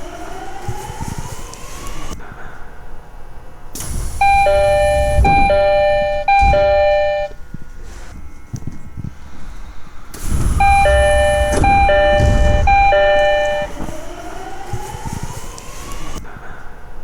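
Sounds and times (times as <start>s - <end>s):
train motors whining: 0.0s - 16.6s
loud low train rumble: 0.0s - 17.0s
two-note door chime: 4.2s - 7.4s, 10.6s - 13.9s.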